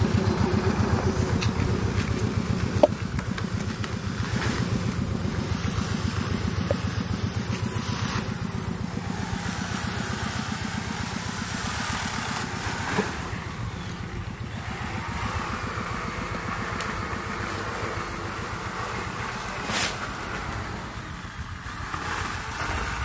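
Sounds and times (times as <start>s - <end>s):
engine running: 0.0s - 23.0s.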